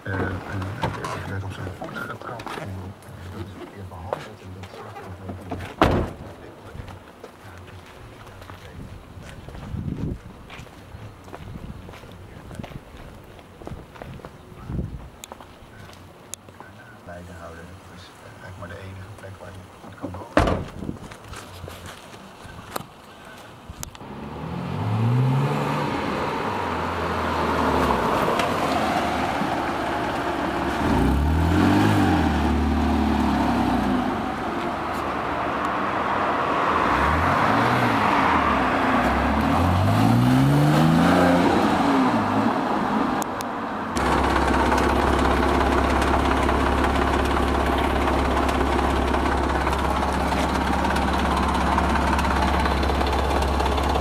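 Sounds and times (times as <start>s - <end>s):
car engine revving and idling: 0.0s - 8.7s, 23.9s - 54.0s.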